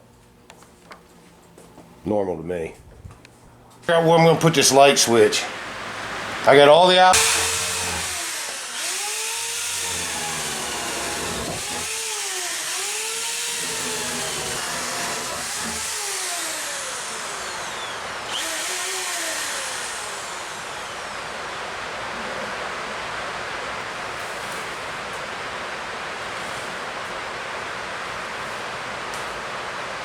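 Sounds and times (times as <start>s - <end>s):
small motor running: 7.1s - 21.1s.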